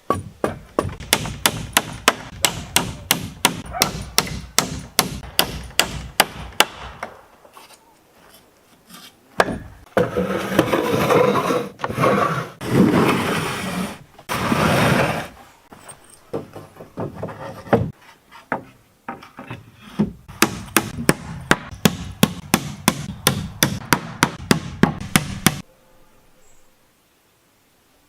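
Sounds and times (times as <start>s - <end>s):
hand saw cutting wood: 10.0s - 15.4s.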